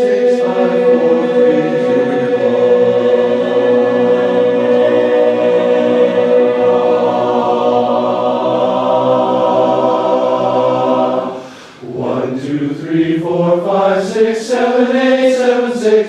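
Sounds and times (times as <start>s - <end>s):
chorus holding a sustained chord: 0.0s - 12.6s.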